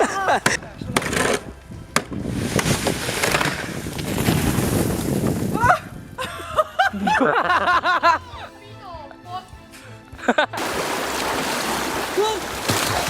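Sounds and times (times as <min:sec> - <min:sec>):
people shouting: 0:12.0 - 0:13.0.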